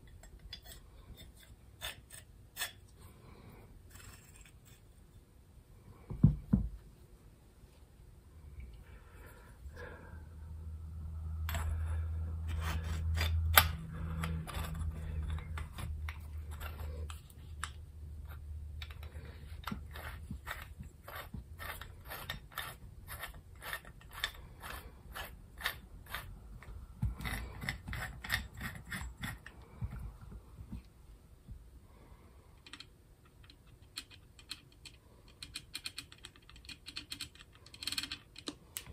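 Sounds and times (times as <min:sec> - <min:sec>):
low hum: 0:08.2 - 0:19.7.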